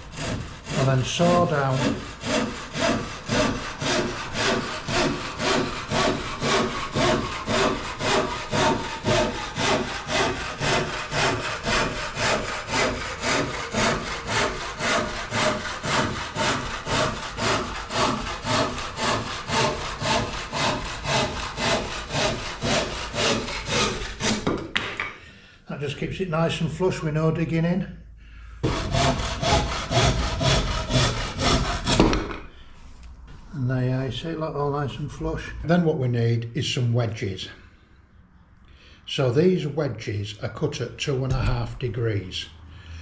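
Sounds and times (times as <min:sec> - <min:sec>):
hand saw cutting wood: 0:00.0 - 0:24.9, 0:28.6 - 0:32.5.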